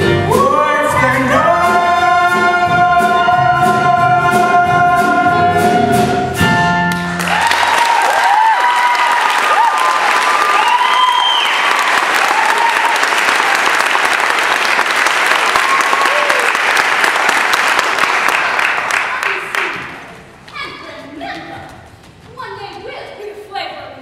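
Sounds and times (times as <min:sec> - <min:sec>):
audience applause: 0:07.1 - 0:20.2
whoops and cheers: 0:07.2 - 0:13.6, 0:15.5 - 0:16.6.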